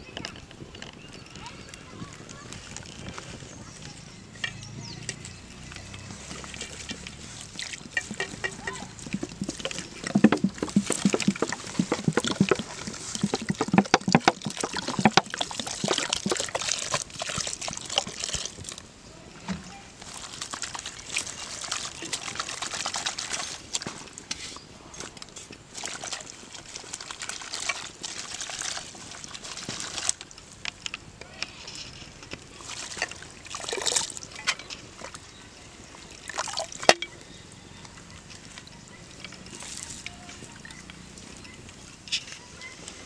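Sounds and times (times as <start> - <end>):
water sloshing and splashing: 2.0 - 30.9, 31.9 - 37.2.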